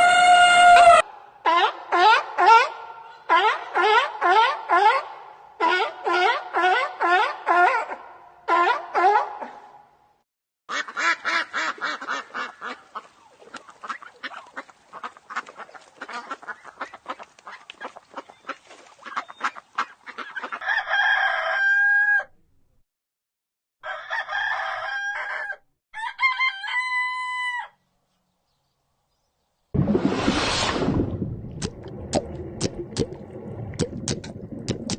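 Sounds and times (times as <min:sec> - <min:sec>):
rooster crowing: 0:00.0 - 0:01.1, 0:20.6 - 0:22.4, 0:23.8 - 0:27.8.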